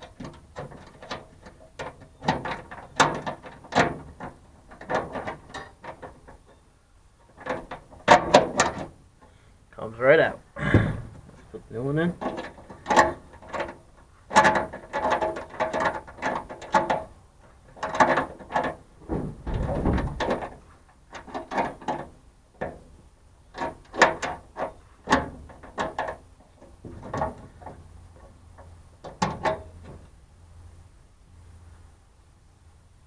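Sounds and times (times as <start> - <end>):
metal clicking and rattling: 0.0 - 6.6, 7.2 - 9.3, 11.1 - 30.2
heavy knock: 10.6 - 11.2.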